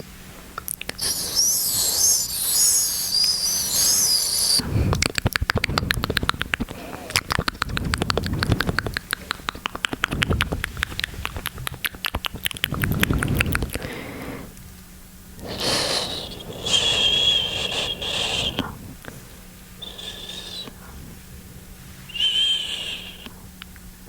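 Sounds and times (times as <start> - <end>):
high wavering squeak: 1.0 - 4.6, 15.6 - 18.6, 19.8 - 20.8, 22.1 - 23.3
breathy low noise: 3.7 - 9.5, 15.4 - 23.6
wet mouth clicks and pops: 4.9 - 13.8.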